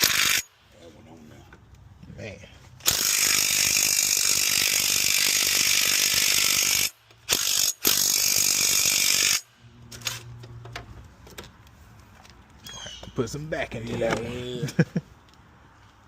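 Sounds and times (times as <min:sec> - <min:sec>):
ratchet wrench clicking: 0:02.8 - 0:10.2.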